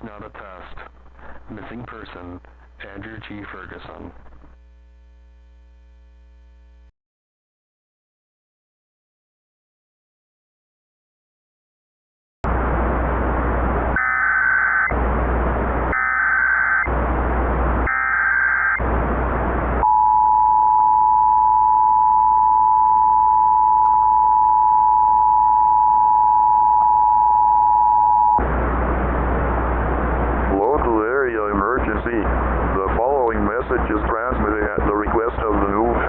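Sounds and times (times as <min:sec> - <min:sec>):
static hiss: 0:00.0 - 0:05.0
chirping data bursts: 0:17.9 - 0:18.8.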